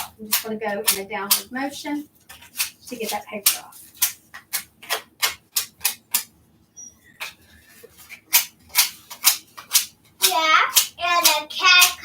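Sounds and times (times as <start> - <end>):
sandpaper scraping paper edge: 2.3 - 6.2, 7.2 - 12.0.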